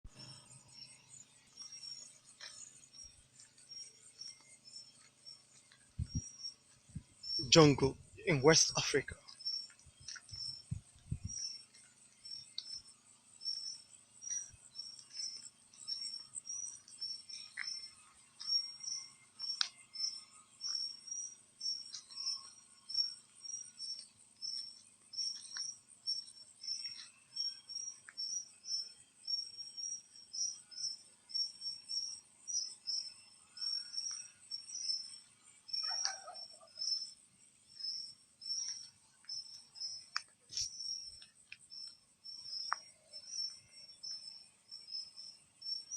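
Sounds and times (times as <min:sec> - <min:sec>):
high-pitched insect buzz: 0:00.1 - 0:45.9
insect chirping: 0:00.1 - 0:45.9
bird calls: 0:35.8 - 0:37.2.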